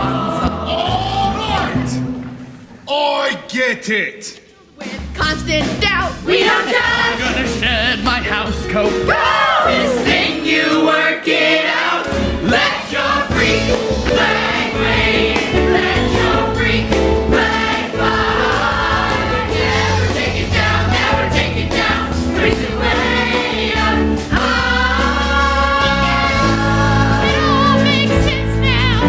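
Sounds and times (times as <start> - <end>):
group singing pop song: 0.0 - 2.1, 6.0 - 29.0
bass and beat: 5.0 - 9.1, 13.2 - 29.0.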